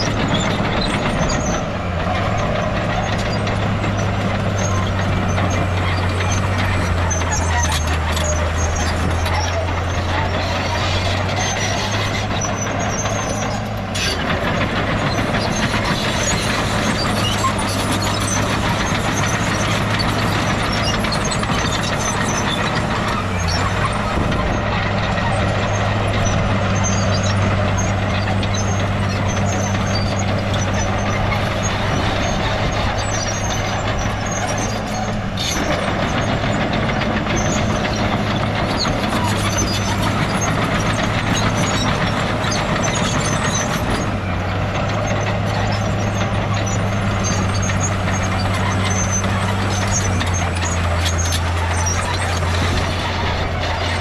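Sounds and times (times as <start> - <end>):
heavy machinery diesel engines: 0.0 - 54.0.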